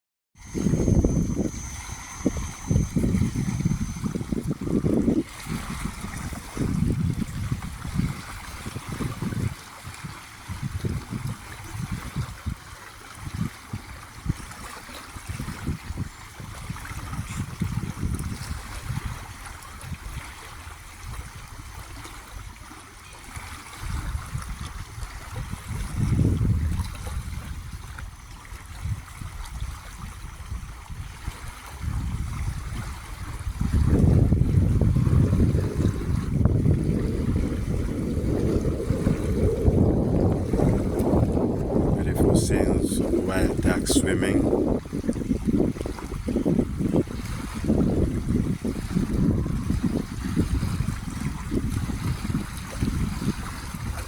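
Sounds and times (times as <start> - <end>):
lake water lapping: 0.4 - 54.0
wind noise on microphone: 0.4 - 54.0
low rumbling surges: 35.6 - 44.0.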